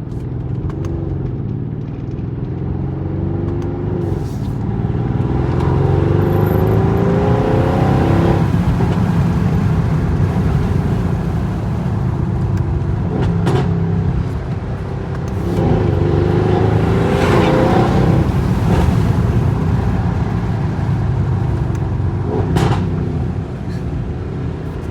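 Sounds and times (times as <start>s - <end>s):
car exhaust rumbling and revving: 0.0s - 24.9s
exhaust pops: 5.3s - 24.9s.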